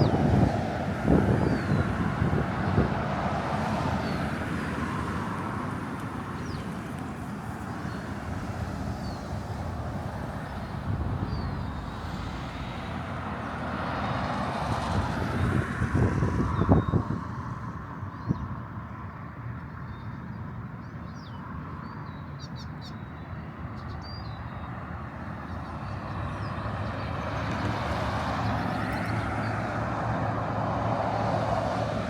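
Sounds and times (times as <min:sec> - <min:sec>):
wind rumbling and gusting: 0:00.0 - 0:18.4, 0:26.0 - 0:32.0.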